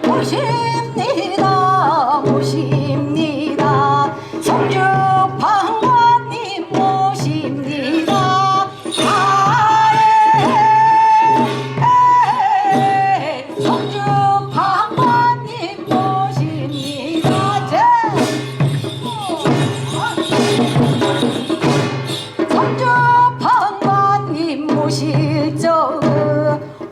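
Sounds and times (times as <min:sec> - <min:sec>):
person singing long notes: 0:00.0 - 0:21.1
drum and gong strokes: 0:02.2 - 0:25.4.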